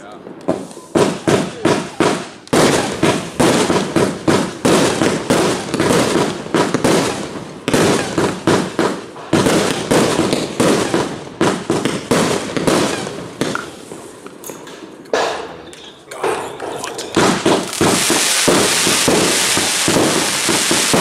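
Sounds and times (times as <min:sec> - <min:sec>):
fireworks firing rapid bangs: 0:00.3 - 0:14.1, 0:17.1 - 0:21.0.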